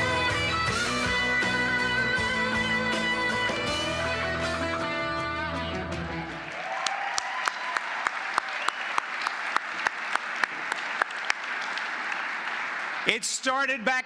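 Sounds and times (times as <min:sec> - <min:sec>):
music: 0:00.0 - 0:06.6
audience applauding: 0:05.9 - 0:13.7
close person clapping: 0:06.3 - 0:13.2.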